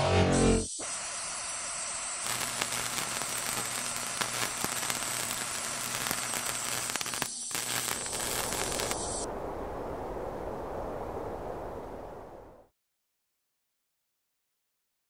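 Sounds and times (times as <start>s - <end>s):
crackling static hiss: 0.7s - 12.6s.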